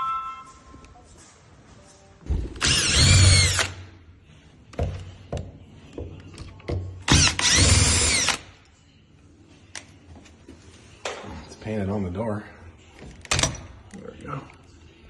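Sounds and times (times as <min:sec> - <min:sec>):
cordless drill running: 0:02.6 - 0:03.7.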